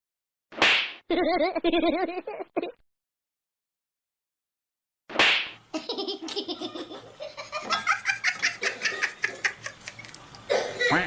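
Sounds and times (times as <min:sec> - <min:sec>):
laughter: 0:01.1 - 0:02.8, 0:05.8 - 0:10.0.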